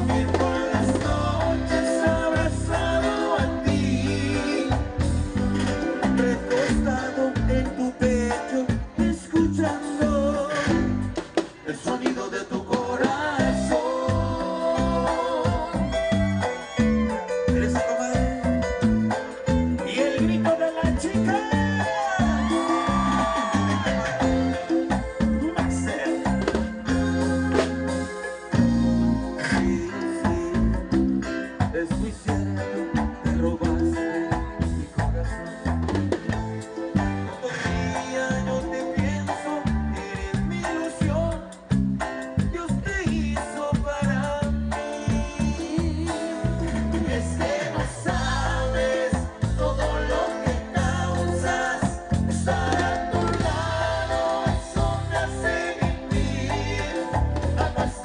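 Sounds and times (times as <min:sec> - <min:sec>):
pulsing bass line: 0:00.0 - 0:11.3, 0:13.2 - 0:58.0
person singing: 0:00.0 - 0:28.4, 0:29.3 - 0:58.0
latin dance band with guitar: 0:00.0 - 0:58.0
steady percussion: 0:00.0 - 0:58.0.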